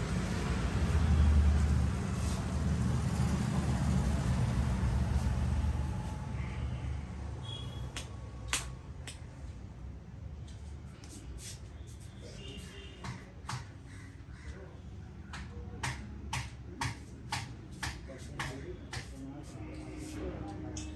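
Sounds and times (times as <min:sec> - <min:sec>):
low traffic rumble: 0:00.0 - 0:20.9
hands tapping and slapping head: 0:08.0 - 0:09.2.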